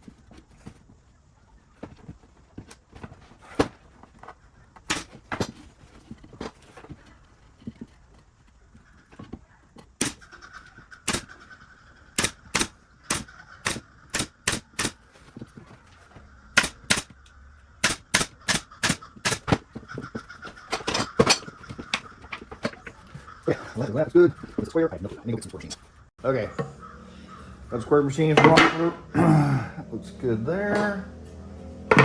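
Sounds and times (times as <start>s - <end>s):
pneumatic nailer firing: 4.9s - 5.5s, 10.0s - 10.2s, 11.0s - 11.3s, 12.2s - 15.2s, 16.6s - 17.1s, 17.8s - 19.6s.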